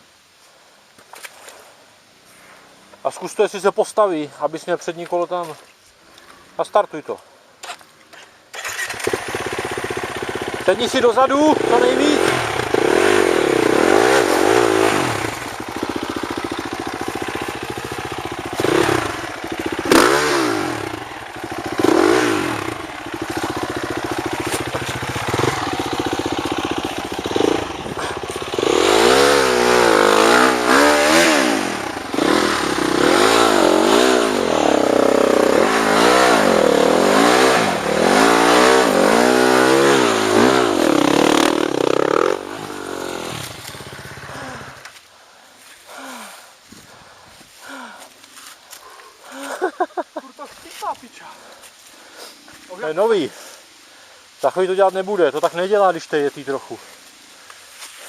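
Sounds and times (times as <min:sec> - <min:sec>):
dirt bike engine revving: 0:08.5 - 0:44.9.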